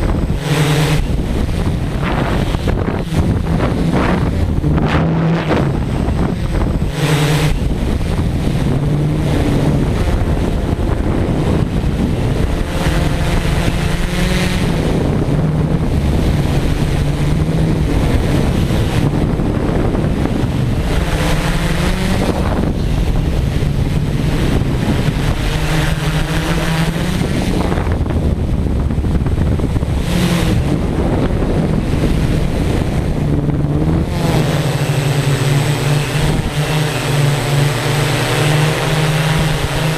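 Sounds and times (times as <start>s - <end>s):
drone motors humming: 0.0s - 39.9s
wind buffeting microphone: 0.0s - 39.9s.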